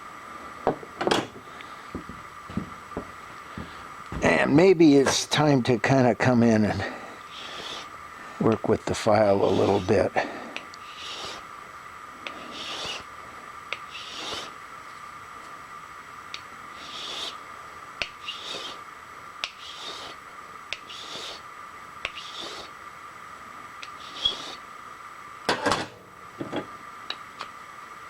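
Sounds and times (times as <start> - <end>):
steady high hum: 0.0 - 28.0
hand file rasping metal: 9.4 - 10.0, 10.8 - 11.4, 12.5 - 13.0, 13.9 - 14.5, 16.8 - 17.4, 18.2 - 18.8, 19.4 - 20.2, 20.8 - 21.4, 22.1 - 22.7, 24.0 - 24.6.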